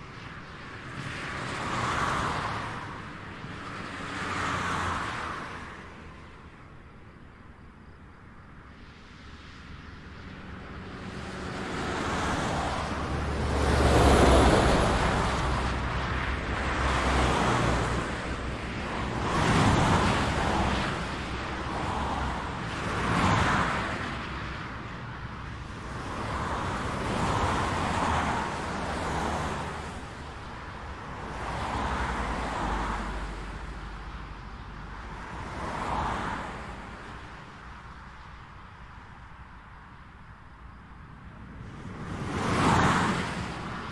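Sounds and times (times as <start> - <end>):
cars passing on highway: 0.0 - 43.9.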